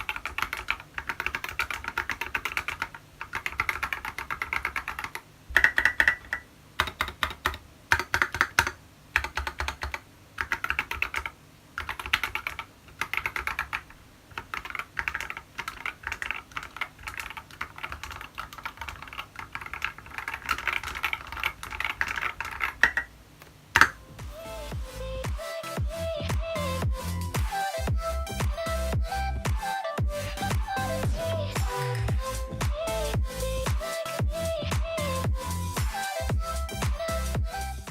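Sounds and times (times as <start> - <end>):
mechanical keyboard typing: 0.0 - 23.1, 23.8 - 24.0.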